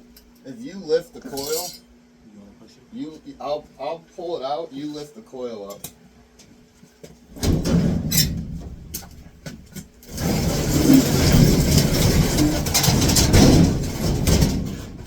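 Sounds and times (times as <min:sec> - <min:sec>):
metal cabinet knocks: 0:07.4 - 0:15.0
metal cabinet dragging across floor: 0:10.1 - 0:15.0.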